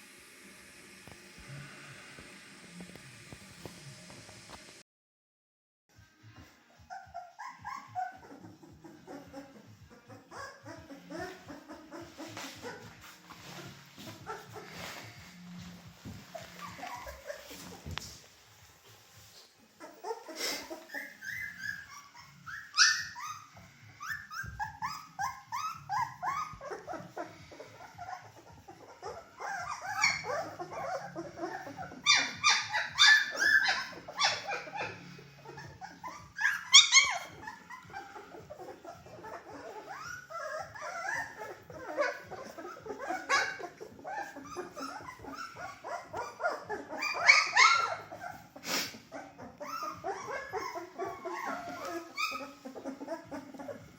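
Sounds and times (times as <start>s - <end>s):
puppies whimpering and yipping: 6.4s - 53.9s
puppy yelps: 6.9s - 12.9s, 16.4s - 17.8s, 19.8s - 53.9s.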